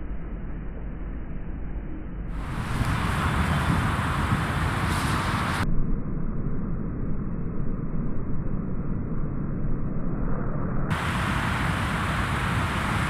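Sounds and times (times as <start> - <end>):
high hiss: 2.4 - 5.6, 10.9 - 13.0
rolling thunder rumble: 2.4 - 5.6, 10.9 - 13.0.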